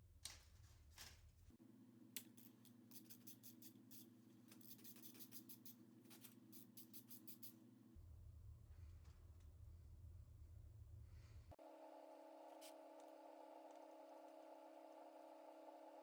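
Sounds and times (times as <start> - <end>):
low room hum: 0.0 - 16.0.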